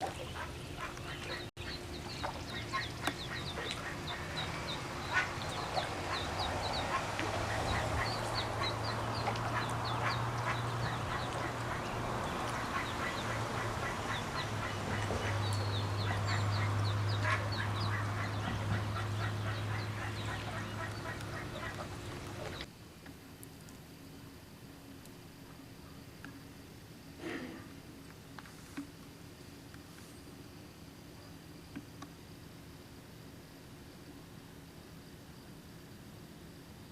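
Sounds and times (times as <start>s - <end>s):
ducklings peeping: 0.0s - 22.7s
steady low hum: 0.0s - 36.9s.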